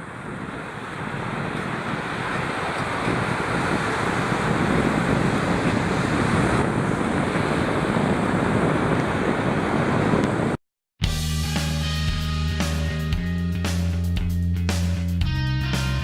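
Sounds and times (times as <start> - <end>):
ocean surf washing on beach: 0.0 - 10.6
wind rumbling on microphone: 0.0 - 10.6
music: 11.0 - 16.0.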